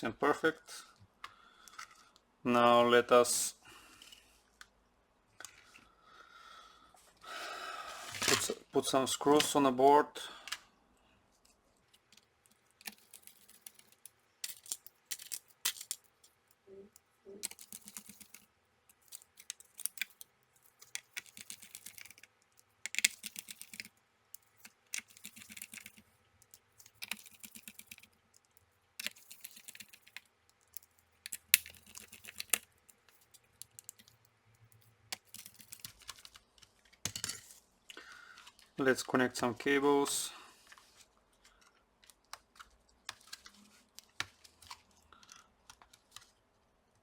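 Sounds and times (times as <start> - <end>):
screwdriver clicking and scraping: 20.8 - 28.4, 29.0 - 36.4.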